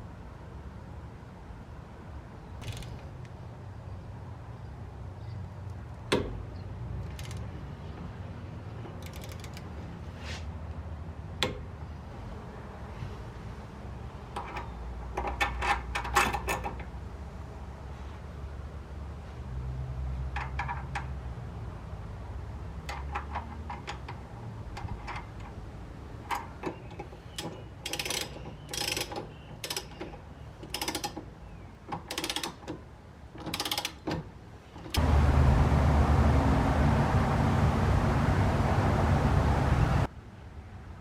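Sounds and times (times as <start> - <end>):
ratchet wrench clicking: 2.6 - 3.0, 7.0 - 7.5, 9.0 - 9.7, 27.8 - 30.0, 30.6 - 31.2, 32.0 - 32.7, 33.4 - 34.0
loud steady rumble: 35.0 - 40.1.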